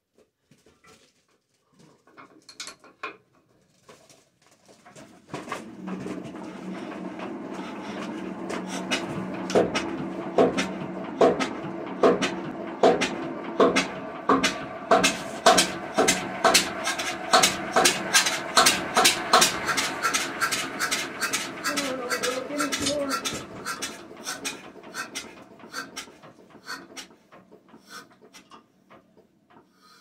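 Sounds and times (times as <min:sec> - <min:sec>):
diesel engine starting: 0:05.3 - 0:29.1
steady hum: 0:05.7 - 0:24.2.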